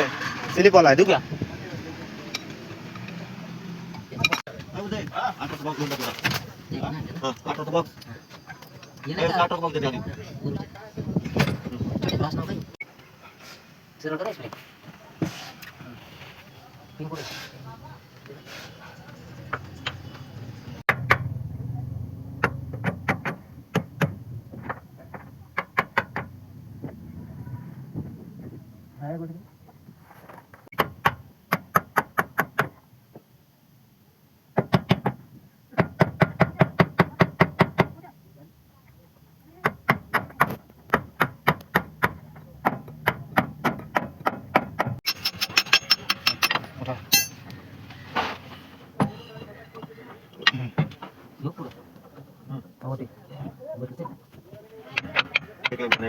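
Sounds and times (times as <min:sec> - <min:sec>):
hand tools striking metal: 0:40.9 - 0:47.6.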